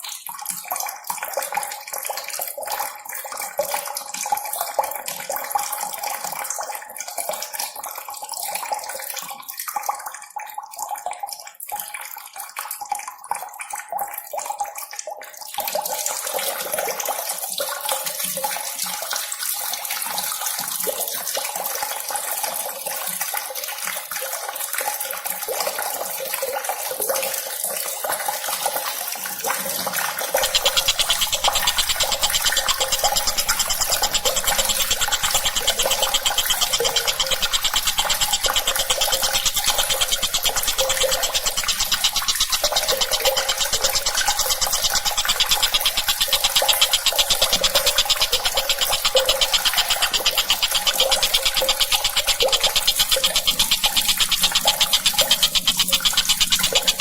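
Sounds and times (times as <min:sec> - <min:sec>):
fast even rattling: 0:30.4 - 0:57.0
running water rushing: 0:30.4 - 0:57.0.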